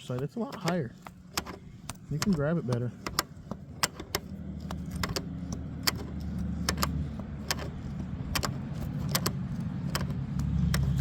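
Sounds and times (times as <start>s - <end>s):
metallic clicks and ticks: 0.0s - 11.0s.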